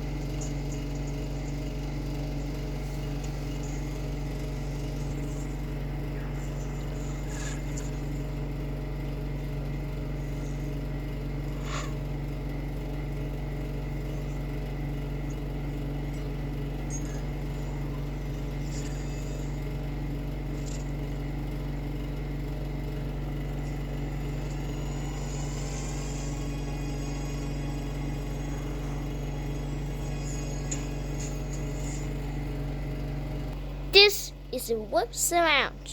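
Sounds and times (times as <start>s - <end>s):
steady low hum: 0.0s - 35.9s
faint clicks and chirps: 0.1s - 4.1s.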